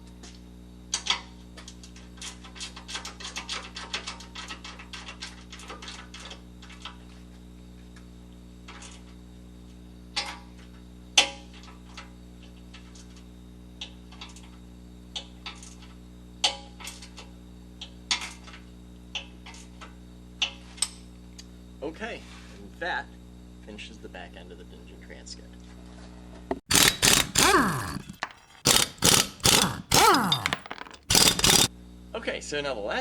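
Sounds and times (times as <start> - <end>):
ratchet wrench clicking: 26.7 - 31.7.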